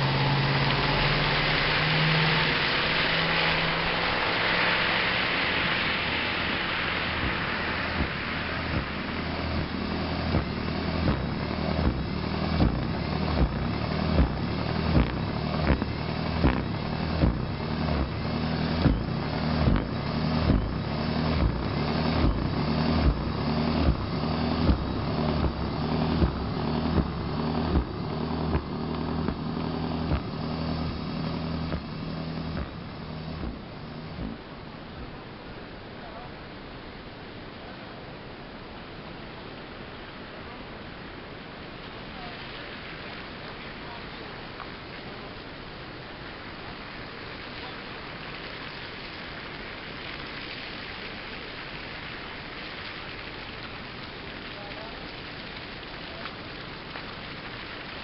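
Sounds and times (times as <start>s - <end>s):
electric snow shovel running: 0.0s - 34.5s
hiss: 0.0s - 35.0s.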